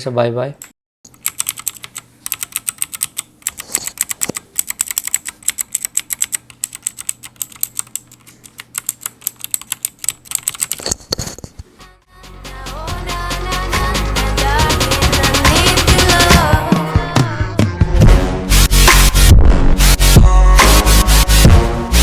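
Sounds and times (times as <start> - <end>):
mechanical keyboard key clicks: 1.1 - 11.0.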